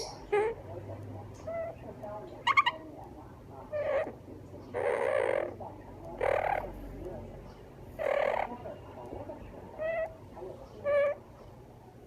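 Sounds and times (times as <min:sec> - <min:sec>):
parrot squeak: 0:01.4 - 0:01.8, 0:02.4 - 0:02.8, 0:04.8 - 0:05.6, 0:06.2 - 0:06.6, 0:08.0 - 0:08.5, 0:09.8 - 0:10.2, 0:10.8 - 0:11.2.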